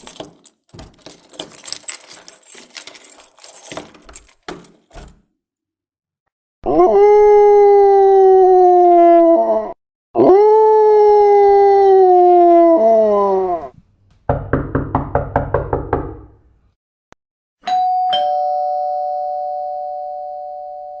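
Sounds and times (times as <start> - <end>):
two-tone doorbell chime: 17.6 - 21.0.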